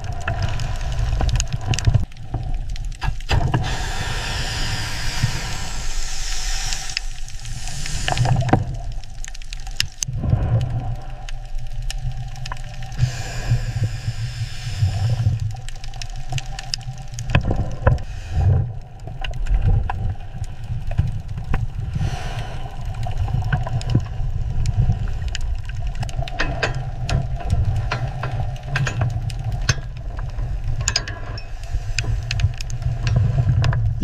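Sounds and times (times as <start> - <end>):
bursts of hiss: 3.6 - 8.6.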